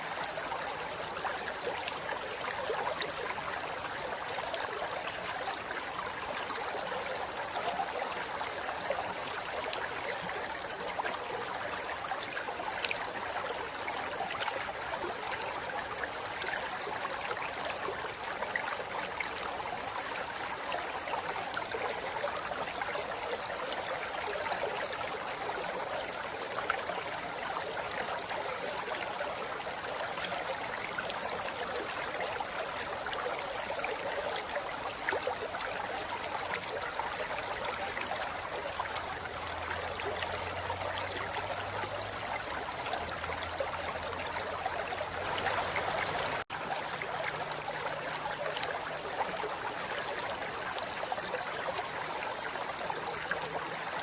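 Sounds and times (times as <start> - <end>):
river water rushing over rocks: 41.4 - 51.0.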